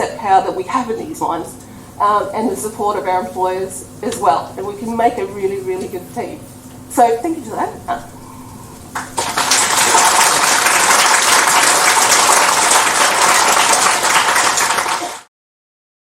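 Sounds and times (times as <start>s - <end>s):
large audience applauding: 8.9s - 15.3s.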